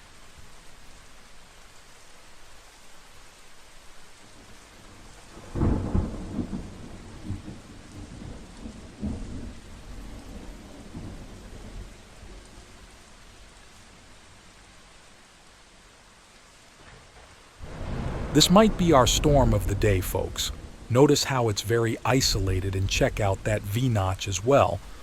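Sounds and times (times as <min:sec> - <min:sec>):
steady rain: 0:00.0 - 0:25.0
thunder clap and rumble: 0:05.4 - 0:12.0, 0:17.6 - 0:25.0.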